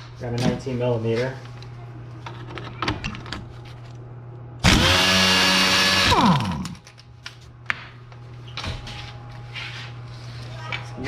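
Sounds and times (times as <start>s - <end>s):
electric power tool spinning: 4.6s - 6.8s.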